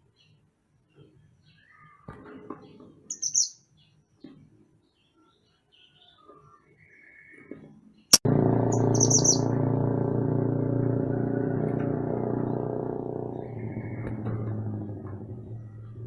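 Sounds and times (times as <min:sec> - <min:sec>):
songbird chirps: 0:00.0 - 0:09.8, 0:11.1 - 0:16.0
loud many-toned hum: 0:08.2 - 0:15.1
high chirping phrase: 0:08.6 - 0:09.6.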